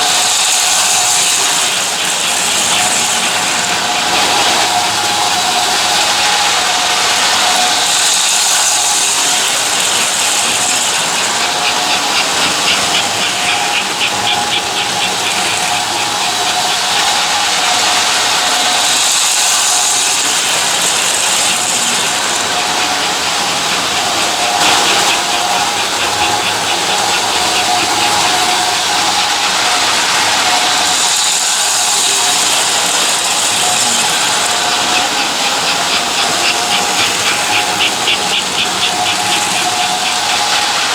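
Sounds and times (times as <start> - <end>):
high hiss: 0.0 - 40.9
rapid rhythmic clicking: 0.0 - 40.9
toy train motor hum and rattle: 0.0 - 40.9.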